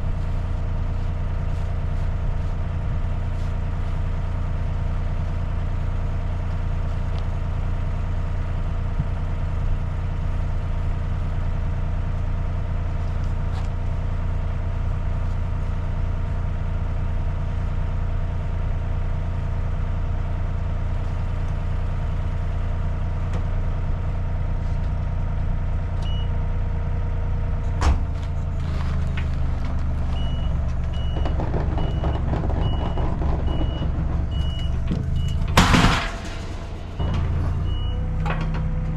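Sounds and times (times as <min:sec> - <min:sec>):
heavy machine engine running: 0:00.0 - 0:38.9.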